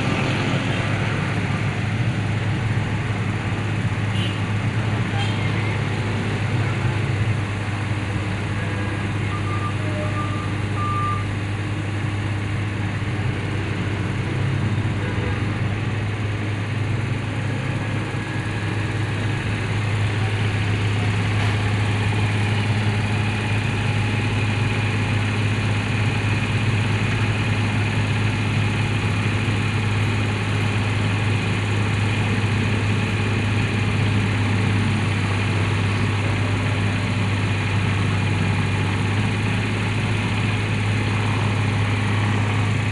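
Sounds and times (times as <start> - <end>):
diesel engine running: 0.0 - 42.9
short high beeps: 9.4 - 11.3.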